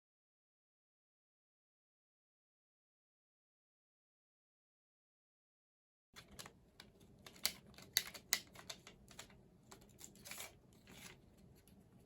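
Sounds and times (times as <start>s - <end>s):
packaging clicks and crinkles: 6.2s - 11.8s.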